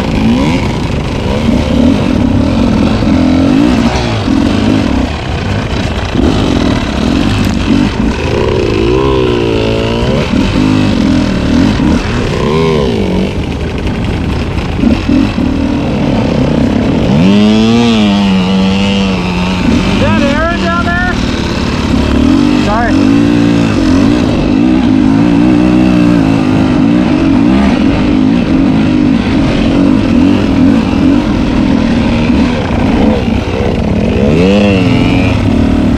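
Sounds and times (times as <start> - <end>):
dirt bike engine revving: 0.0 - 35.9.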